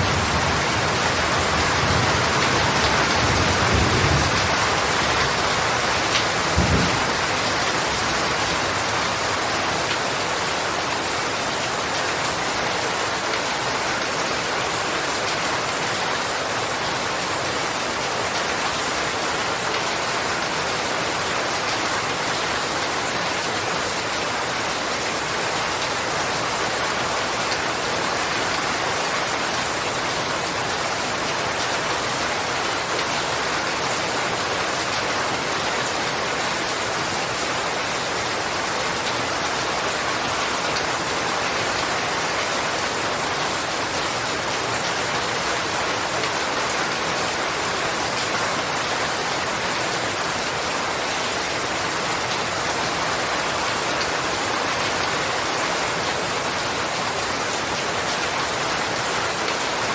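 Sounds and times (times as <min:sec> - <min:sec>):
heavy rain: 0:00.0 - 0:59.9.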